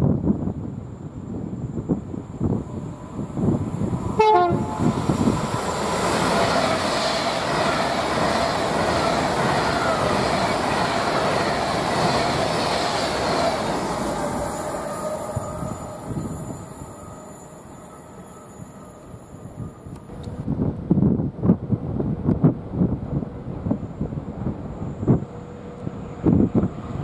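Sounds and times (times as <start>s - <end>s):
train passing at speed: 0.0s - 27.0s
train horn call: 4.2s - 4.9s.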